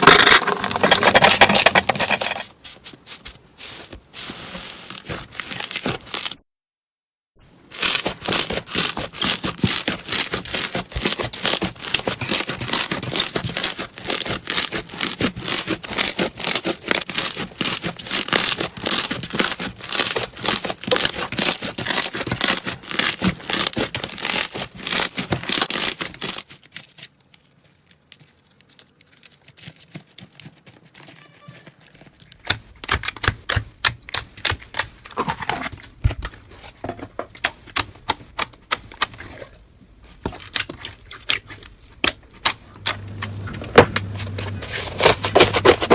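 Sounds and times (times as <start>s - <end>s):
slime crackling and popping: 7.8s - 26.4s.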